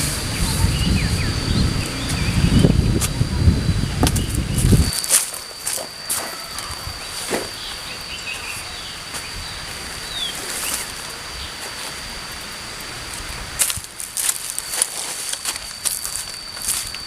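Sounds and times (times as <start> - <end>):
high-pitched insect tone: 0.0 - 17.0
bird chirps: 0.3 - 2.8, 3.6 - 11.6.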